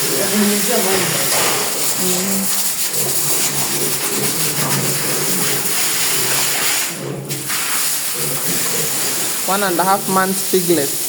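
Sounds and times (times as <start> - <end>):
water spraying from hose: 0.0 - 11.0.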